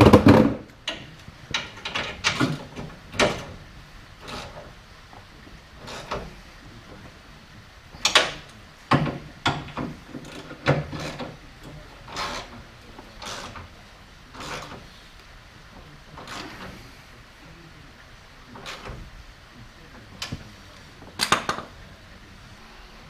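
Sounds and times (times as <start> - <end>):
hand tools and metal parts clattering: 0.0 - 3.6, 4.2 - 4.7, 8.0 - 14.9.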